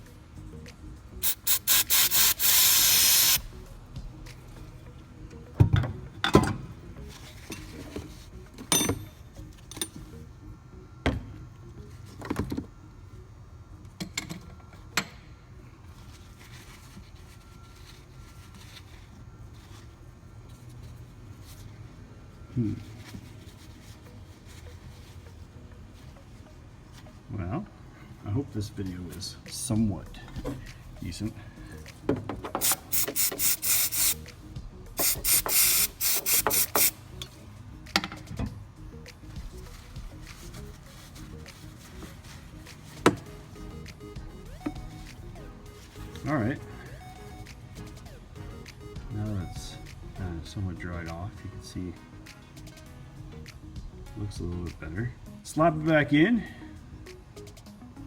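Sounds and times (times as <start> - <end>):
aerosol spray hissing: 1.2 - 3.5, 32.6 - 34.2, 35.0 - 37.0.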